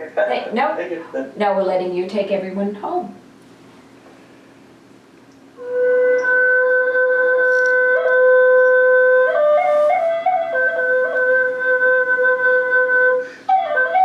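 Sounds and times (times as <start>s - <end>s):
flute playing: 5.6s - 14.0s.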